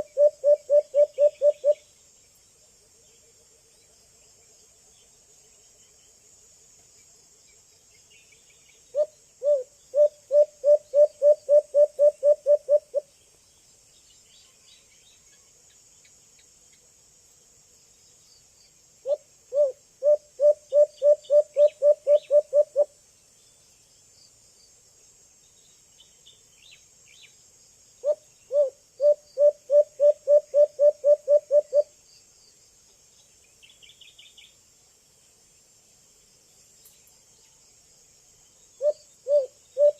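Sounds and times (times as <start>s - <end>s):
dove hooting: 0.0s - 1.8s, 8.9s - 13.0s, 19.0s - 22.9s, 28.0s - 31.9s, 38.8s - 39.9s.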